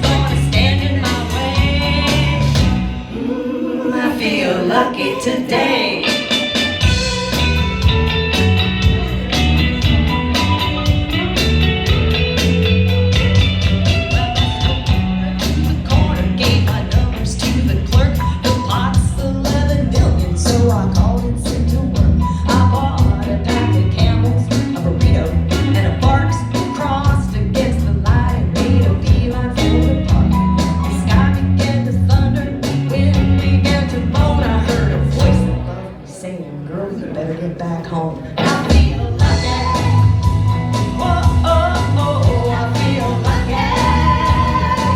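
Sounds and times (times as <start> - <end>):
steady drum beat: 0.0 - 3.1, 6.0 - 35.6, 38.4 - 44.9
band playing rock song: 0.0 - 3.2, 6.0 - 35.8, 38.3 - 44.9
bass guitar: 0.0 - 3.2, 6.0 - 36.0, 38.3 - 44.9
person singing: 0.0 - 6.4, 38.3 - 44.9
electric guitar: 5.7 - 35.8, 38.2 - 44.9.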